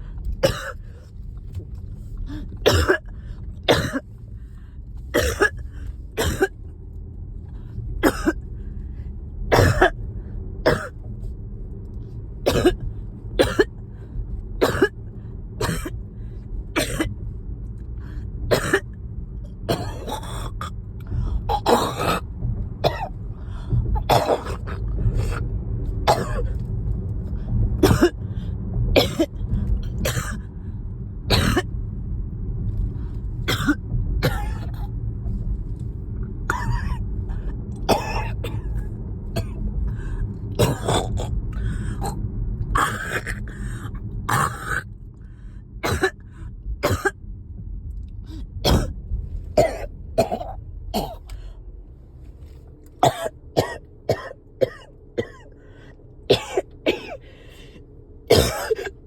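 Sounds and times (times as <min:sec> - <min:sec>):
car cabin rumble: 0:00.0 - 0:59.0
person coughing: 0:00.4 - 0:00.8, 0:02.6 - 0:03.1, 0:03.7 - 0:04.0, 0:05.2 - 0:05.6, 0:06.2 - 0:06.5, 0:08.0 - 0:08.4, 0:09.5 - 0:10.0, 0:10.7 - 0:11.0, 0:12.5 - 0:12.8, 0:13.4 - 0:13.7, 0:14.6 - 0:15.0, 0:15.6 - 0:15.9, 0:16.8 - 0:17.1, 0:18.5 - 0:18.8, 0:19.7 - 0:20.7, 0:21.5 - 0:22.2, 0:24.0 - 0:25.4, 0:26.1 - 0:26.5, 0:27.8 - 0:28.2, 0:29.0 - 0:29.3, 0:30.0 - 0:30.4, 0:31.3 - 0:31.7, 0:33.5 - 0:34.9, 0:36.5 - 0:37.0, 0:37.9 - 0:38.7, 0:40.6 - 0:41.3, 0:42.8 - 0:44.8, 0:45.8 - 0:46.2, 0:46.8 - 0:47.2, 0:48.6 - 0:48.9, 0:49.6 - 0:51.4, 0:53.0 - 0:55.5, 0:56.3 - 0:57.3, 0:58.3 - 0:59.0.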